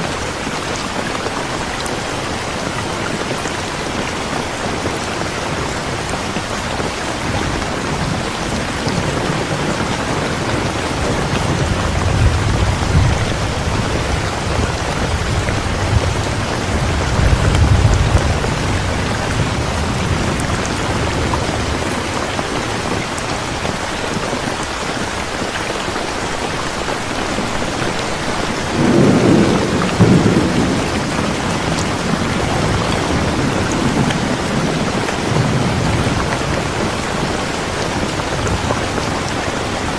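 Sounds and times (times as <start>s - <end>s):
steady rain hissing: 0.0s - 39.9s
thunder rumbling: 4.7s - 23.2s, 28.1s - 39.3s.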